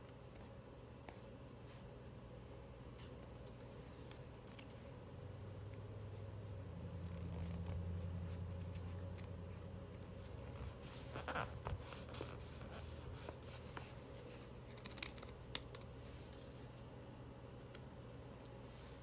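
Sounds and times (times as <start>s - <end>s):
low steady hum: 0.0s - 19.0s
rubbing and scratching on paper: 10.2s - 16.9s.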